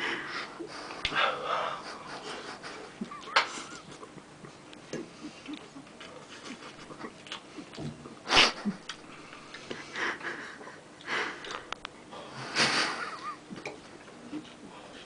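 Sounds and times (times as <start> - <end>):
person sniffing: 8.3 - 8.6.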